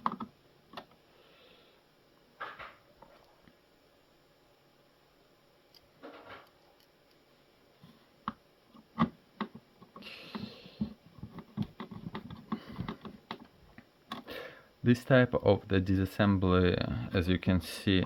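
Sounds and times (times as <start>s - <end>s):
plastic parts clicking and knocking: 0.0s - 0.9s, 9.0s - 14.3s.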